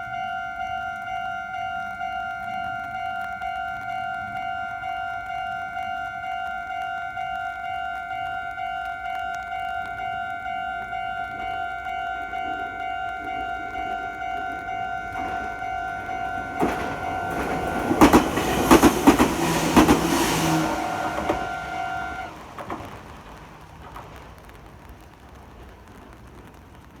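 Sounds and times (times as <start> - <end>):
level crossing warning bell: 0.0 - 22.5
train wheels clacking: 10.9 - 24.6.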